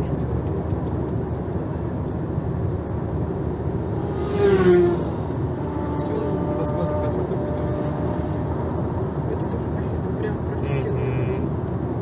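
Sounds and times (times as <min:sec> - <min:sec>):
car road rumble from inside: 0:00.0 - 0:12.0
vehicle passing by: 0:03.5 - 0:09.4.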